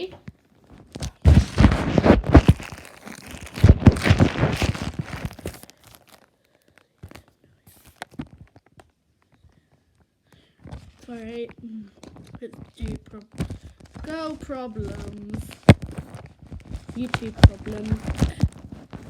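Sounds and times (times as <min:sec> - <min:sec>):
slime squished crackling: 0:00.8 - 0:06.3, 0:11.0 - 0:19.0.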